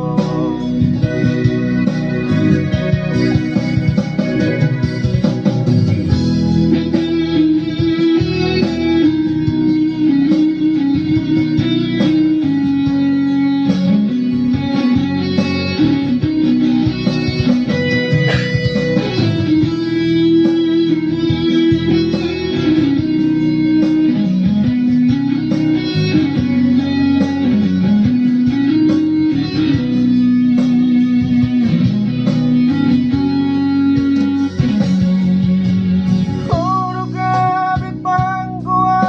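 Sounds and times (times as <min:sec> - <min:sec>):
guitar with sliding notes: 0:00.0 - 0:39.0
pop band playing: 0:00.0 - 0:39.0.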